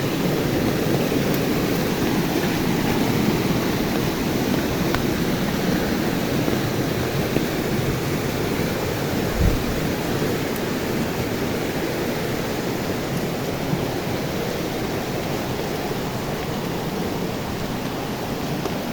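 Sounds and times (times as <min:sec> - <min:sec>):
loud rush of water: 0:00.0 - 0:18.9
low thump: 0:09.3 - 0:09.8.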